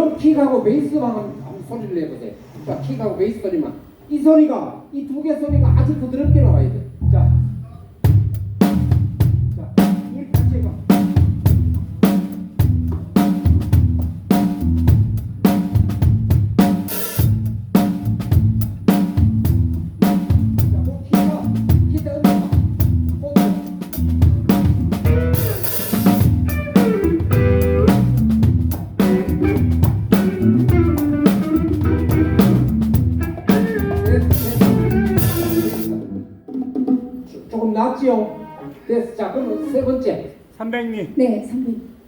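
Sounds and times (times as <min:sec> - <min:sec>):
bass guitar groove: 0:05.5 - 0:09.7, 0:10.4 - 0:12.0, 0:12.6 - 0:36.2
drum kit playing: 0:08.0 - 0:37.5
hi-hat strokes: 0:25.4 - 0:27.1, 0:27.9 - 0:36.0.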